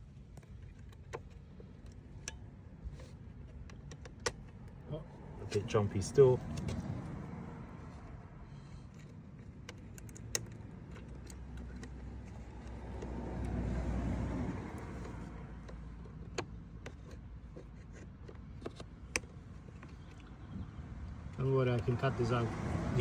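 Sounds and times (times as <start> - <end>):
low vehicle rumble: 0.0 - 23.0
small metal parts clicking: 8.9 - 13.6.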